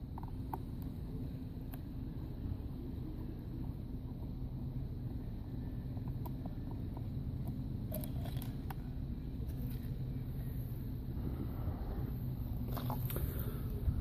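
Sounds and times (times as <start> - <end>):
low machine hum: 0.0 - 14.0.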